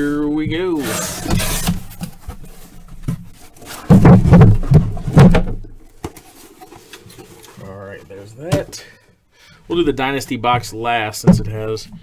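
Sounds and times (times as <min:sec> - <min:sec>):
cardboard case rasp: 0:00.8 - 0:05.3
rustling knocks: 0:01.1 - 0:07.6.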